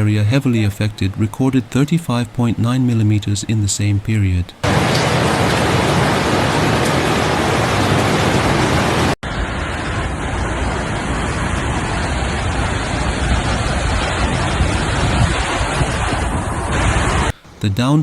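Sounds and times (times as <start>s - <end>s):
floodwater rushing: 4.6s - 17.3s
rain: 4.6s - 17.4s.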